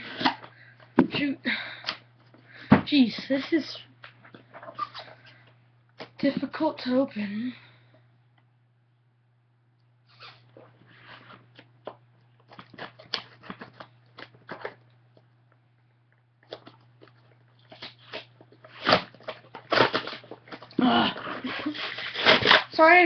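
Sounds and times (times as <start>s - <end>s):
packing tape tearing: 17.7s - 22.8s.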